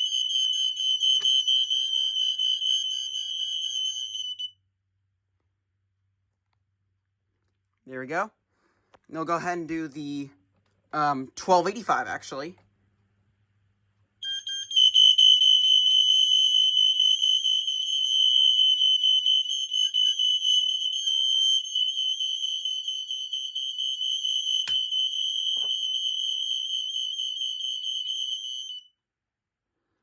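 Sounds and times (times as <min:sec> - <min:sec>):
smoke alarm tone: 0:00.0 - 0:04.5, 0:14.2 - 0:28.9.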